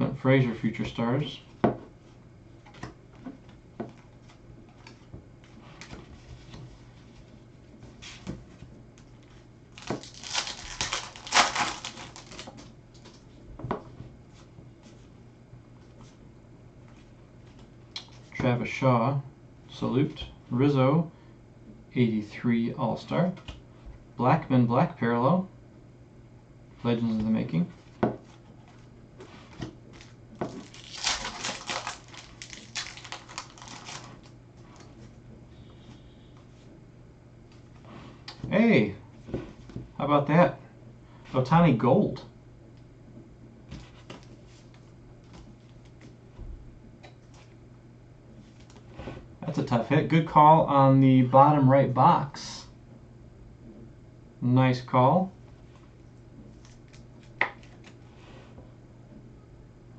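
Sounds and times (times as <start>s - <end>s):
cards rustling while flipped: 9.2s - 13.2s, 28.2s - 34.9s
foil wrapper crinkling and tearing: 9.7s - 13.1s, 30.0s - 34.3s.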